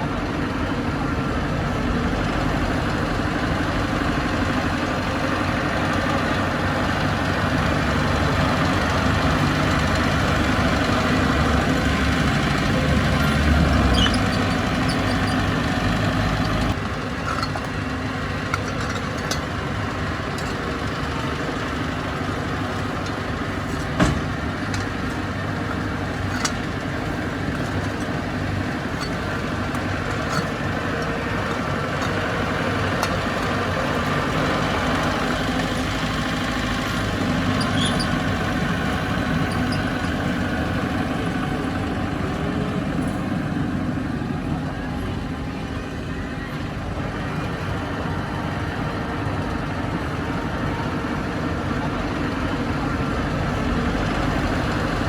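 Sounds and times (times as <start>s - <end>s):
bulldozer diesel engine running: 0.0s - 55.0s
sharp metal clanks: 16.8s - 34.4s.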